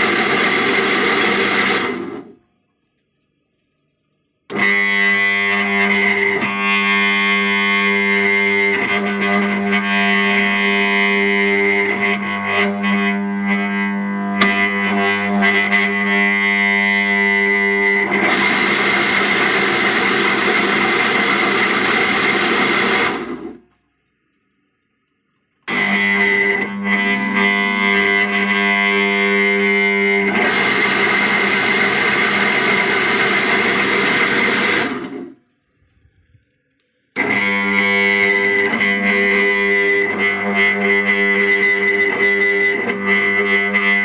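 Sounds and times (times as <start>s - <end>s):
pump motor running: 18.1s - 23.6s, 25.7s - 35.4s
electric motor humming: 25.6s - 44.0s.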